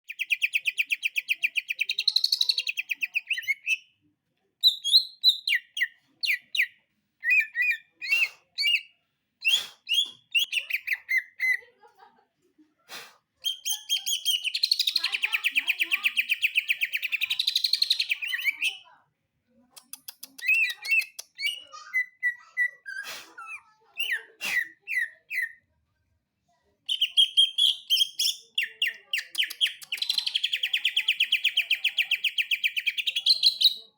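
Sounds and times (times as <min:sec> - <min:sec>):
bird chirps and clicks: 0:19.7 - 0:21.7, 0:26.9 - 0:33.7.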